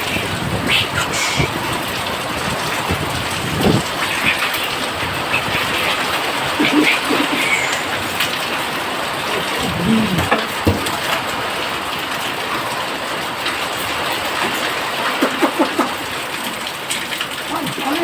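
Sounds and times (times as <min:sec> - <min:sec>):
rain on the ground: 0:00.0 - 0:18.0
short voice: 0:09.6 - 0:10.4.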